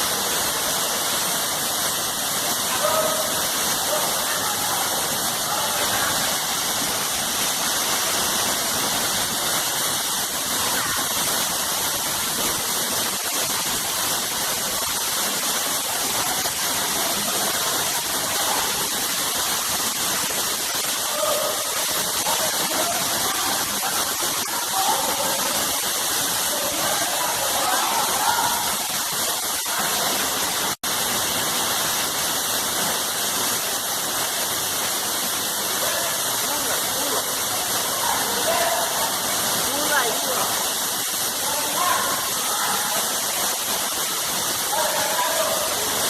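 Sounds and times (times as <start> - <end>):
waterfall cascading: 0.0 - 46.0.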